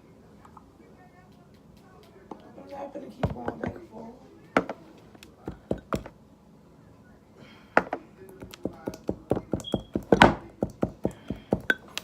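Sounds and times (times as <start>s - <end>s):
slime taps and clicks: 8.4s - 9.8s.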